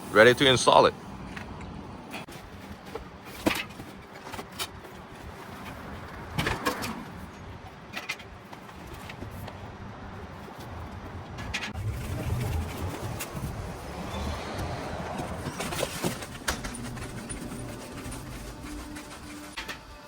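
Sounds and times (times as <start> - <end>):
low background rumble: 11.7 - 19.6.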